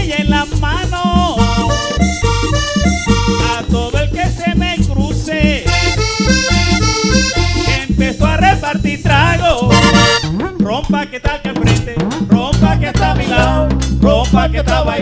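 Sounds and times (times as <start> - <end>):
live band music: 0.0 - 10.7.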